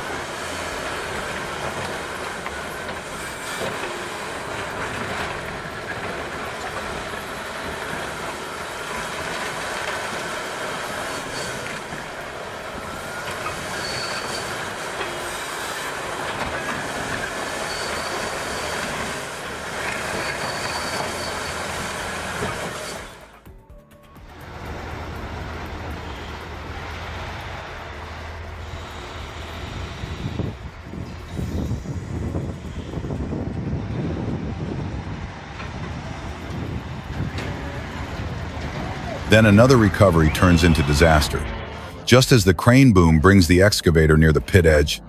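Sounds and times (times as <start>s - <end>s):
bulldozer engine running: 0.0s - 45.0s
steel tracks clanking: 0.0s - 45.0s
high squeals from undercarriage: 13.5s - 14.7s, 17.5s - 19.1s, 19.9s - 23.2s.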